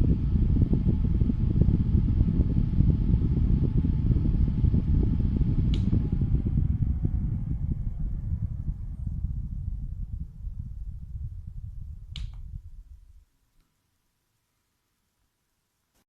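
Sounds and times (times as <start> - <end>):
desk fan running: 0.0 - 13.4
sharp click: 12.2 - 12.4.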